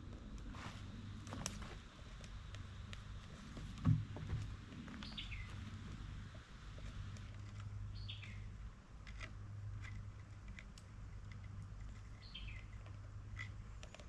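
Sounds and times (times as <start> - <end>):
low steady rumble: 0.0 - 14.0
bird chirping: 4.9 - 5.8, 7.9 - 8.6, 12.0 - 13.0.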